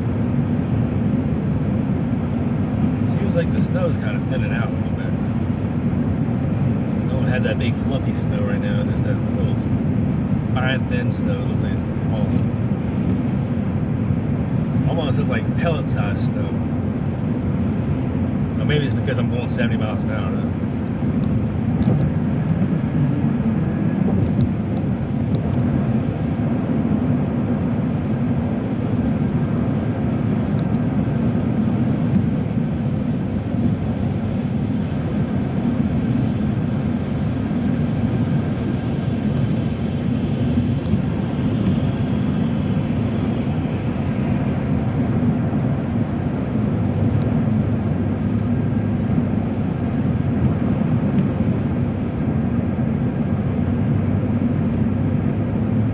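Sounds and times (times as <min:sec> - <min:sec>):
car engine running: 0:00.0 - 0:55.9
road and tyre noise: 0:00.0 - 0:55.9.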